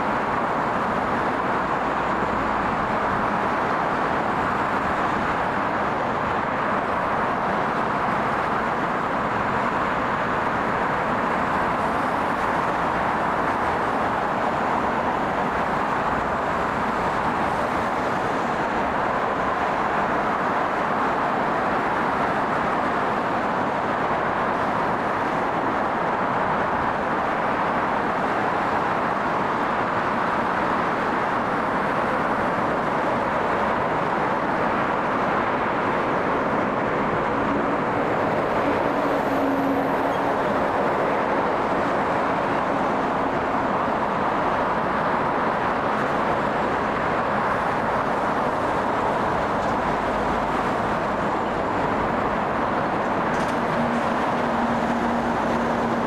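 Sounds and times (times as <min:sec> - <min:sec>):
aircraft engines running: 0:31.0 - 0:56.0.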